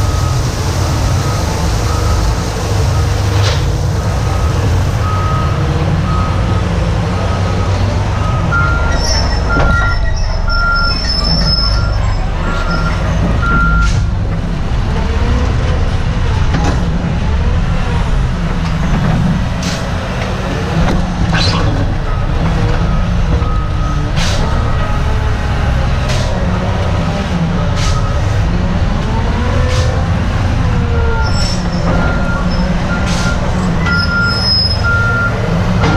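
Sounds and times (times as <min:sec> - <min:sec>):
diesel engine running: 0:00.0 - 0:35.9
reversing alarm beeping: 0:04.3 - 0:14.0, 0:31.2 - 0:35.9.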